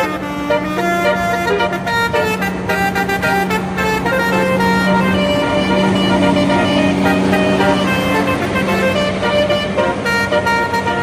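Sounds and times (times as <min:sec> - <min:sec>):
bus horn playing melody: 0:00.0 - 0:11.0.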